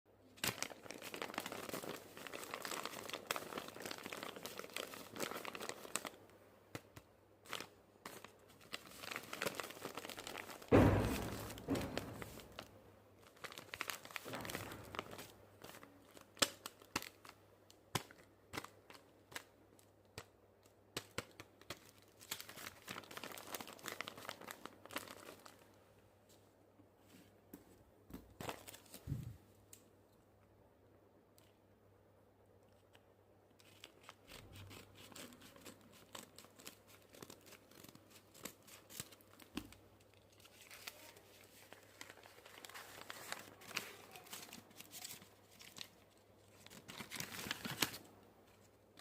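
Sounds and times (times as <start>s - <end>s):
paper crinkling and tearing: 0.4s - 17.4s, 21.0s - 25.7s, 33.6s - 49.0s
loud thump: 10.7s - 12.4s.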